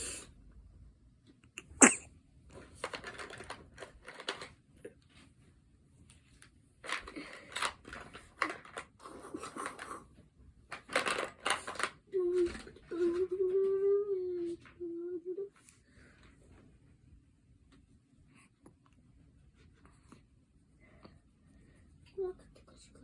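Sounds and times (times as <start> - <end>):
baby sneezing: 1.6 - 2.1.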